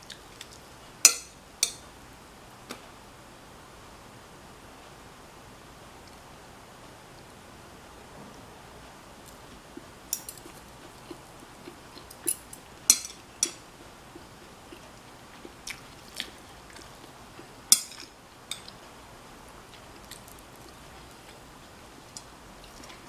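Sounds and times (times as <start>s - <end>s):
person chewing: 9.2s - 18.8s, 19.6s - 23.0s.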